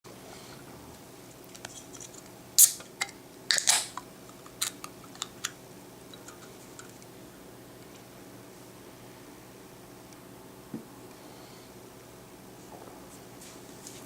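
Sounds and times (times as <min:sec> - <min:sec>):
faint steady hum: 0:00.1 - 0:14.0.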